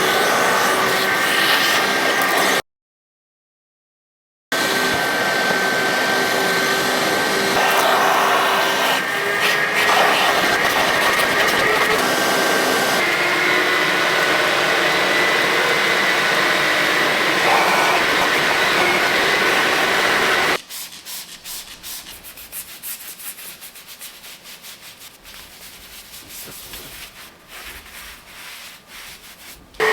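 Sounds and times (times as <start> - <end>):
vacuum cleaner running: 0.0 - 2.6, 4.5 - 20.6
brush scrubbing mat: 7.5 - 29.8.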